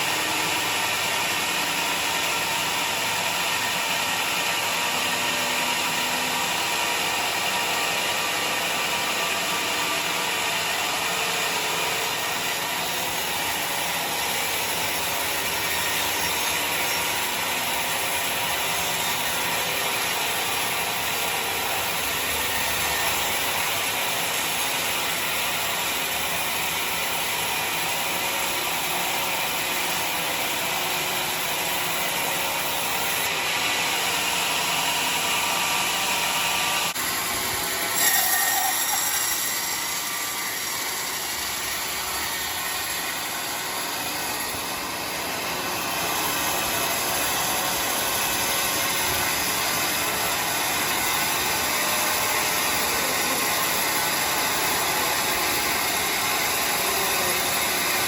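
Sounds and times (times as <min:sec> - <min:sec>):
sawmill machinery clattering: 0:00.0 - 0:58.0.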